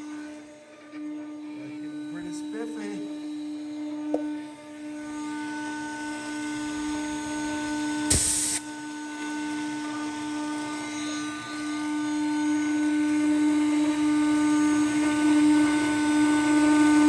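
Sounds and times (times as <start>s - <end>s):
router spindle running: 0.0s - 17.0s
loud hiss: 8.1s - 8.7s.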